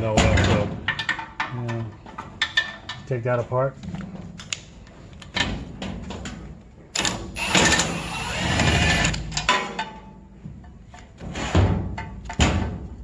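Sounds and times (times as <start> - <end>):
metal clicks and clanks: 0.3 - 3.2, 9.0 - 11.1
power tool rattle: 7.0 - 9.5.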